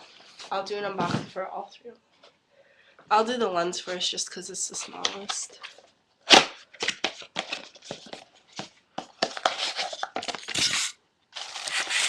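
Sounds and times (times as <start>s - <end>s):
packaging rustling: 4.8s - 12.0s
packaging tearing: 6.3s - 8.2s, 9.2s - 12.0s.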